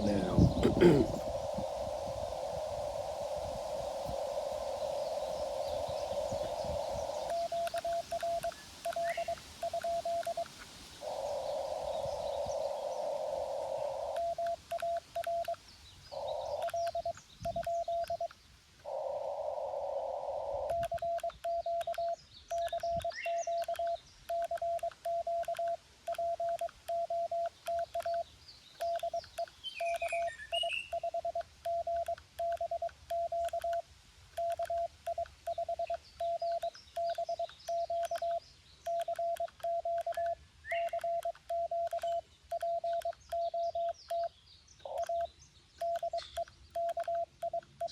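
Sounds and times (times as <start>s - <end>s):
receiver hiss: 0.0s - 15.6s
faint bird chirps: 0.0s - 47.9s.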